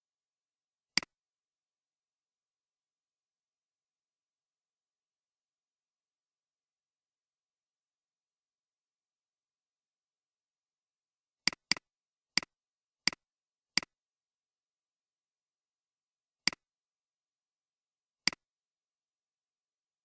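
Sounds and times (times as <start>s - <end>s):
computer mouse clicks: 11.5s - 11.8s.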